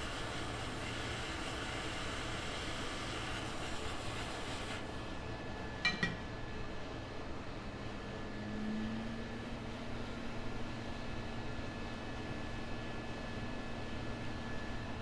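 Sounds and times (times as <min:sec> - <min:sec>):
small tool clinking: 0:05.9 - 0:06.3.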